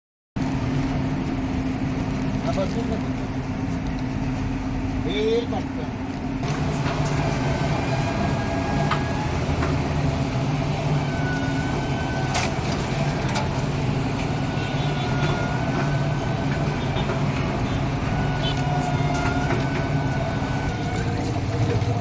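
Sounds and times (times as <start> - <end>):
machine hum: 6.3 - 22.0.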